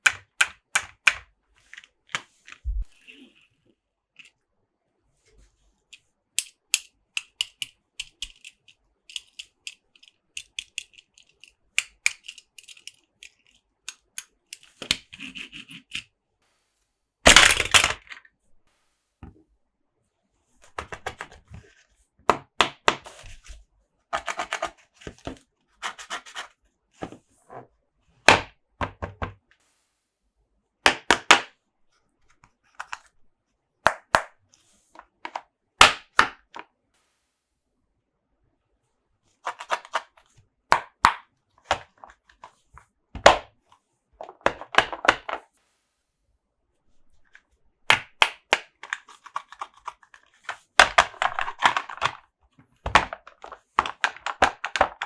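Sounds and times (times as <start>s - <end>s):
hands handling plastic toy parts: 0.0s - 3.6s, 4.2s - 4.4s, 5.8s - 16.1s, 17.3s - 18.3s, 32.7s - 33.2s, 33.9s - 36.7s, 39.4s - 43.4s, 44.2s - 45.5s, 47.1s - 55.0s.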